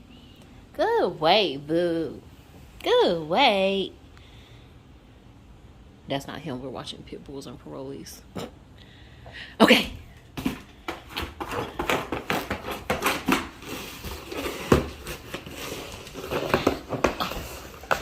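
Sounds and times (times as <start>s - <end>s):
dog scratching cardboard box: 10.4s - 18.0s.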